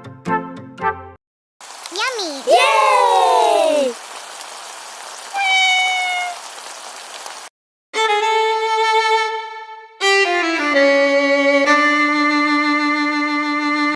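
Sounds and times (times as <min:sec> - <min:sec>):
soft hiss: 0:01.6 - 0:05.4
solo violin: 0:08.0 - 0:13.9.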